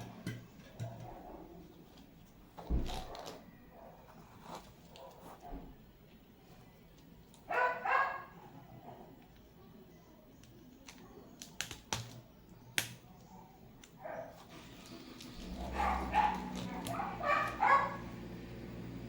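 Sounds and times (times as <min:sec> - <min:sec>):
dog yelping barks: 0:07.5 - 0:08.3, 0:15.6 - 0:18.0.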